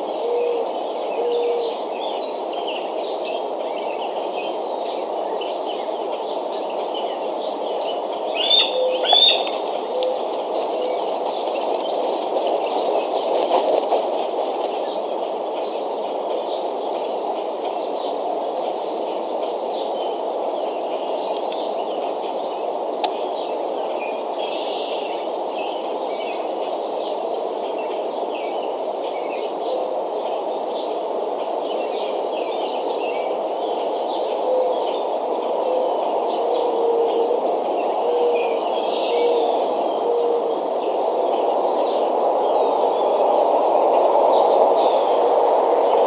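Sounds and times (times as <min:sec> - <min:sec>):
low rushing background noise: 0:00.0 - 0:46.0
faint low coo: 0:00.2 - 0:01.8
bird chirps: 0:08.4 - 0:11.6.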